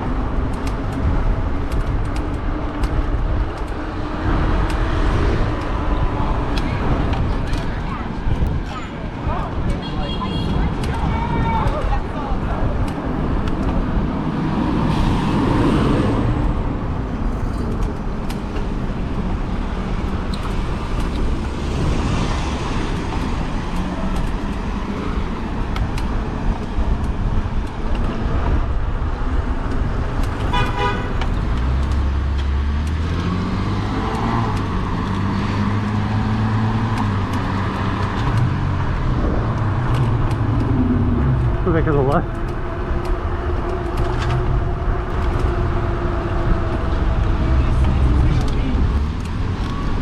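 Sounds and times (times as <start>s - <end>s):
cars passing: 0.0s - 50.0s
wind and road noise: 0.0s - 50.0s
car horn toot: 30.5s - 31.2s.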